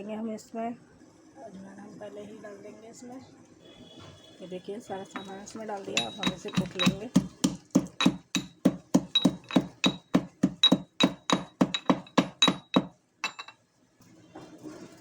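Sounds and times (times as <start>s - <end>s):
pestle pounding in a mortar: 5.1s - 13.5s.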